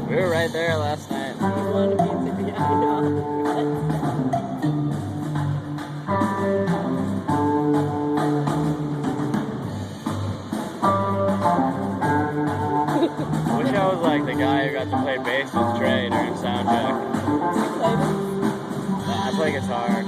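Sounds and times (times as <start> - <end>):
bass guitar: 0.0 - 20.0
drum beat: 0.0 - 20.0
electric guitar lead notes: 1.4 - 20.0.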